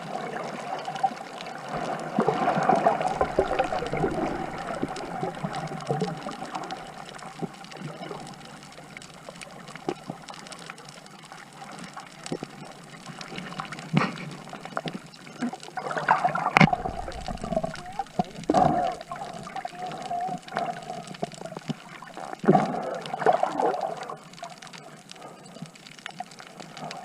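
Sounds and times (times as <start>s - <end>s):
water sloshing and gurgling: 1.6s - 10.8s, 15.7s - 24.2s.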